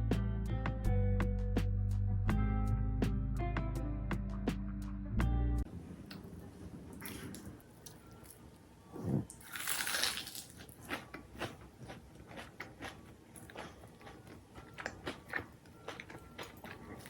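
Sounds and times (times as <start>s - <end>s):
crunchy food chewing: 9.2s - 17.0s.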